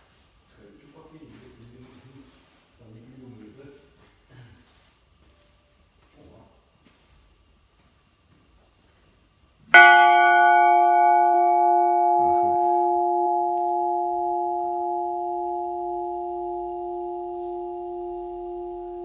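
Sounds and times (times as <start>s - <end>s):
church bell ringing: 9.8s - 19.0s.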